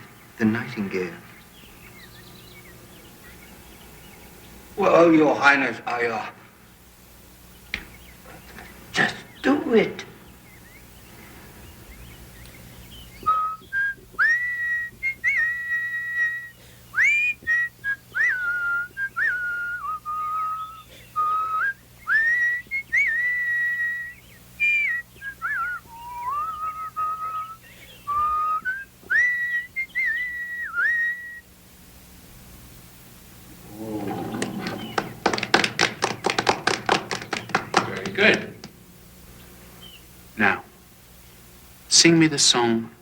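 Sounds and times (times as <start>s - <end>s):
person whistling birdsong imitation: 11.8s - 31.5s, 34.4s - 35.2s.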